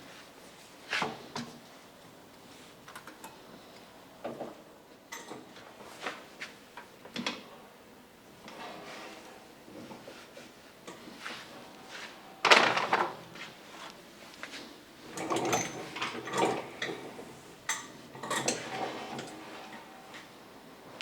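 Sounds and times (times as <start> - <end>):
heavy objects clunking and knocking: 12.4 - 13.2.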